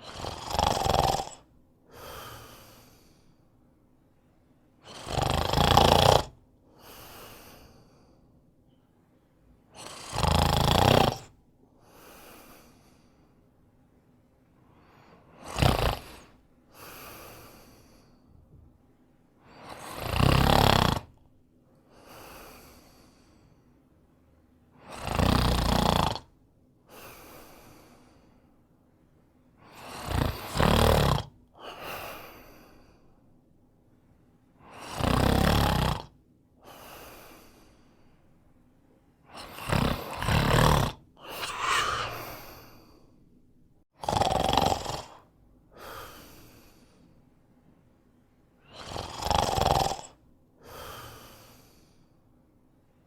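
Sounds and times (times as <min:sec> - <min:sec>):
man snoring: 0:00.0 - 0:03.2, 0:04.8 - 0:07.7, 0:09.8 - 0:11.4, 0:15.3 - 0:18.0, 0:19.6 - 0:21.2, 0:24.8 - 0:26.3, 0:29.7 - 0:32.5, 0:34.6 - 0:36.1, 0:39.3 - 0:42.9, 0:44.0 - 0:46.8, 0:48.7 - 0:51.9
quiet breath: 0:01.4 - 0:05.0, 0:06.6 - 0:10.0, 0:11.2 - 0:19.9, 0:21.2 - 0:25.0, 0:26.8 - 0:30.6, 0:31.4 - 0:35.0, 0:36.0 - 0:43.9, 0:45.0 - 0:48.9, 0:50.0 - 0:53.0.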